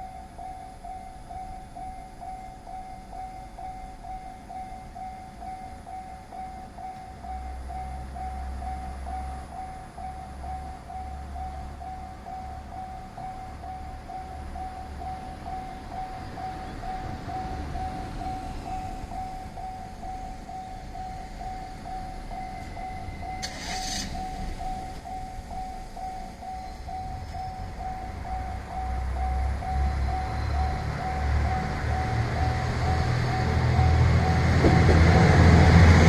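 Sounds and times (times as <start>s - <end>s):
approaching railcar rumble: 12.7s - 36.0s.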